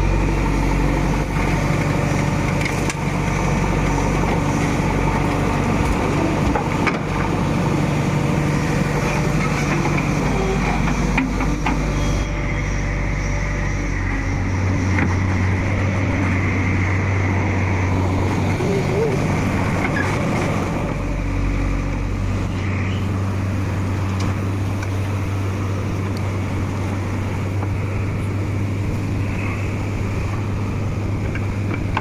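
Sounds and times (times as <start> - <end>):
heavy diesel engine running: 0.0 - 32.0.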